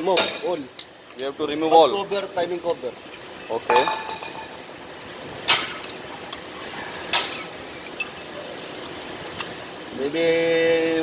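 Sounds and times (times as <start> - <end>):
steady background noise: 0.0 - 11.0
metal clinks and taps: 2.6 - 6.4.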